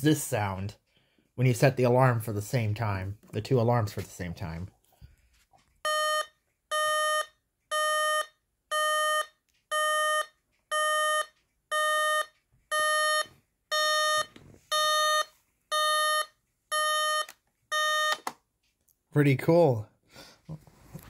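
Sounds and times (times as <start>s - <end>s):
alarm clock beeping: 5.8s - 18.3s.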